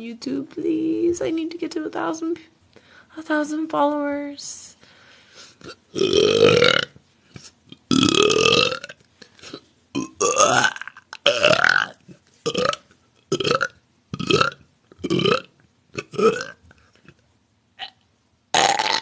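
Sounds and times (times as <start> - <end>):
woman burping: 5.7 - 6.9, 7.9 - 9.0, 10.0 - 16.6, 17.8 - 18.0, 18.6 - 19.0.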